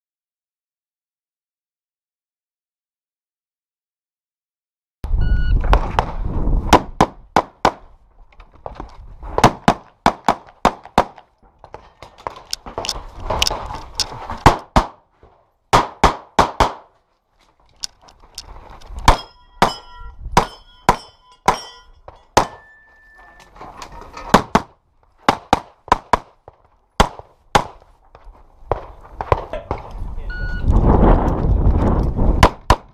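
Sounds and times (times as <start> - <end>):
pistol shots: 9.4 - 11.2, 14.4 - 15.0, 15.7 - 16.9, 22.4 - 22.7, 24.4 - 26.4, 27.0 - 27.8
steel targets ringing: 19.1 - 23.5.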